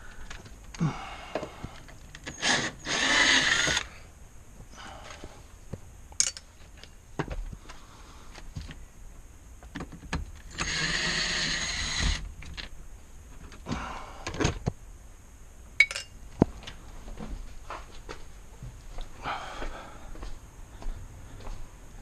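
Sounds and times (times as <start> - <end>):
cordless drill running: 2.2 - 4.0, 10.5 - 12.2.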